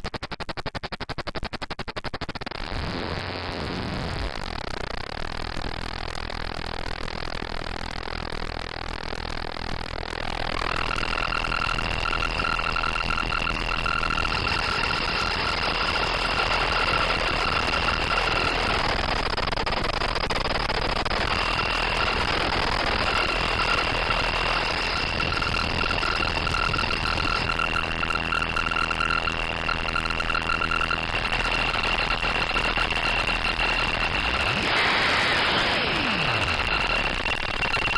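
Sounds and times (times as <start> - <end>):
synthesized engine noise rush: 7.8 - 37.9
high whine: 9.2 - 37.9
low pulsing tone: 10.2 - 19.3, 21.0 - 37.9.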